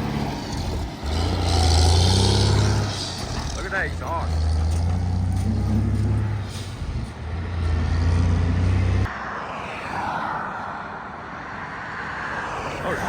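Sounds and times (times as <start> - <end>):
truck diesel engine rumbling: 0.0 - 9.1
road traffic noise: 0.0 - 13.0.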